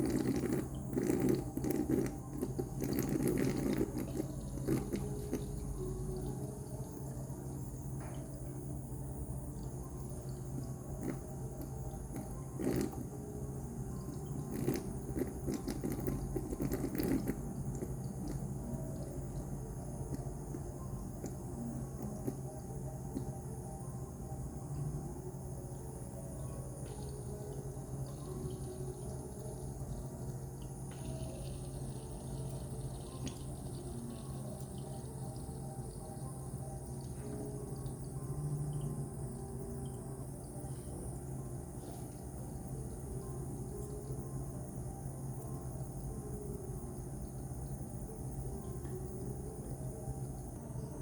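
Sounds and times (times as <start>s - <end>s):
water dripping: 0.0s - 8.7s, 9.3s - 13.1s, 13.9s - 23.4s, 26.4s - 40.6s
humidifier low hum: 0.0s - 51.0s.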